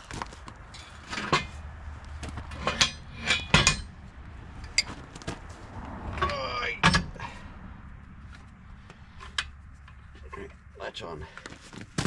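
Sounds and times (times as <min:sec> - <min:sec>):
heavy steel parts knocking: 0:00.7 - 0:05.1.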